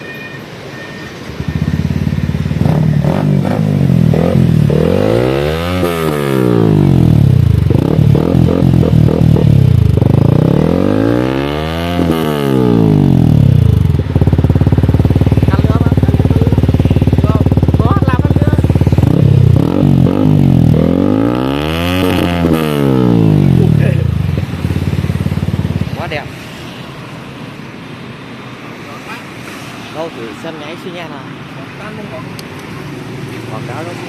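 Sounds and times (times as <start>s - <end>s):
motorcycle engine revving: 1.3s - 27.0s.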